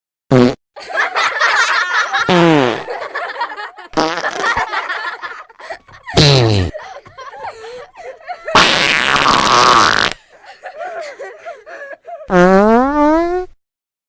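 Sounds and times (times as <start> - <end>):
fart sounds: 0.3 - 0.6, 8.6 - 10.2.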